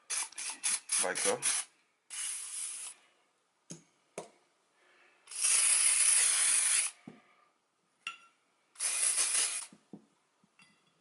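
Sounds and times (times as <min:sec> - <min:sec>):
aerosol spray can hissing: 0:00.1 - 0:03.0, 0:05.3 - 0:07.0, 0:08.8 - 0:09.7.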